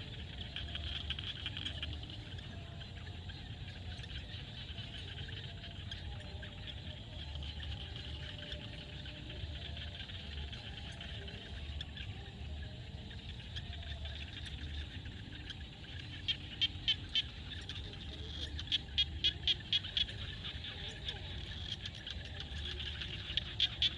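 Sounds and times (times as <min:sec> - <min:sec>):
frog chorus: 0:00.0 - 0:23.9.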